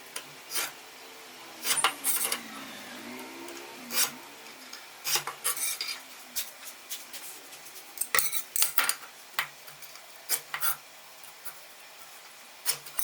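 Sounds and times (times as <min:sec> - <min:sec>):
faint wavering squeal: 0:00.8 - 0:06.3.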